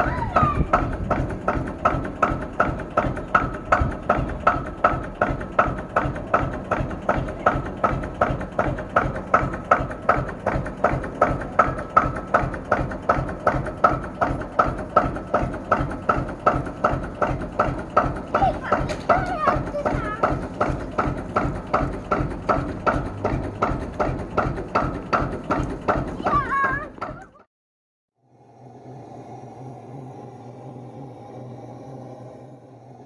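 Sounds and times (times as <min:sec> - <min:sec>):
tractor engine idling chug: 0:00.0 - 0:27.5.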